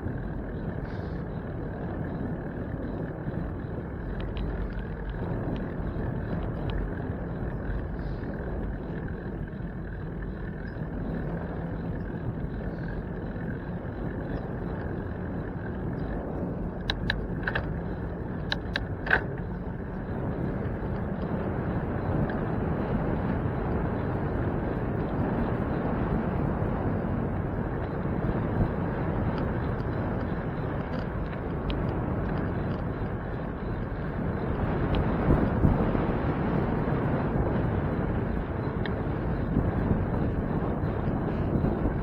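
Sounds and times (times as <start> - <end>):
bicycle road and wind rumble: 0.0 - 42.0
sharp clicks: 16.8 - 17.8, 18.4 - 19.5.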